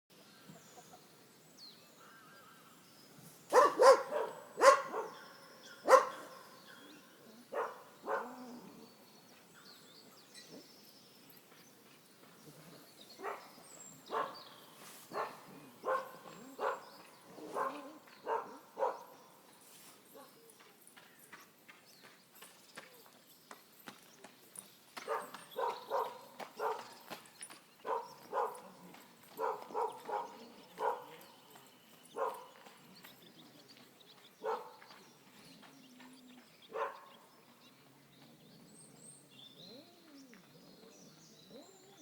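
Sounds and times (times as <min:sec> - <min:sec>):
dog barking: 0:03.5 - 0:06.9, 0:07.5 - 0:08.6, 0:13.2 - 0:13.5, 0:14.1 - 0:14.5, 0:15.1 - 0:19.2, 0:25.0 - 0:27.0, 0:27.8 - 0:31.3, 0:32.1 - 0:32.6, 0:34.4 - 0:34.9, 0:36.7 - 0:37.2.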